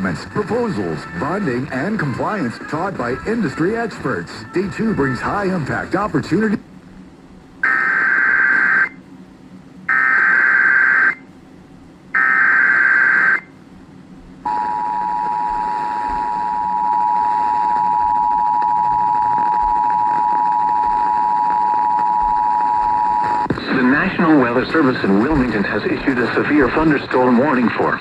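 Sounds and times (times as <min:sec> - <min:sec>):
two-tone attention signal: 0:14.5 - 0:23.5
buzzing data tones: 0:14.5 - 0:24.1.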